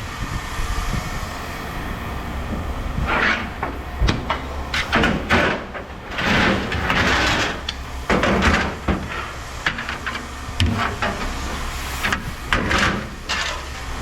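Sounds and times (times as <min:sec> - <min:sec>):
low machine hum: 0:00.0 - 0:14.0
scrap metal clattering and scraping: 0:02.5 - 0:14.0.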